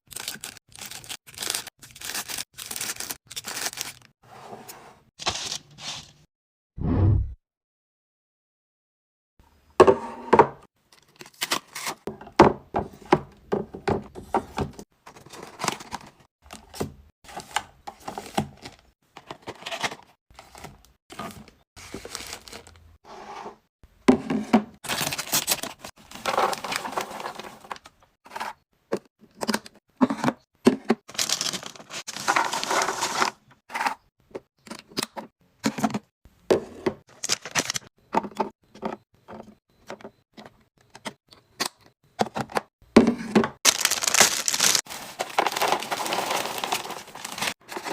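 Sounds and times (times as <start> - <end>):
plastic packaging crinkling: 0.1 - 4.1, 43.7 - 47.9
containers clacking and thudding: 25.9 - 34.4, 42.2 - 47.9.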